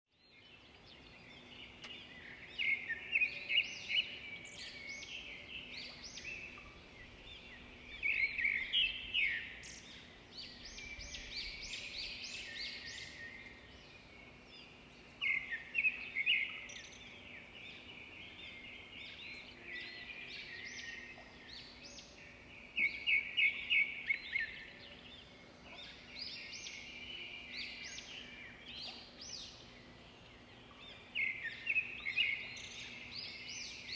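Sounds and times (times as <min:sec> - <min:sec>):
songbirds chirping and singing: 0:00.1 - 0:33.9.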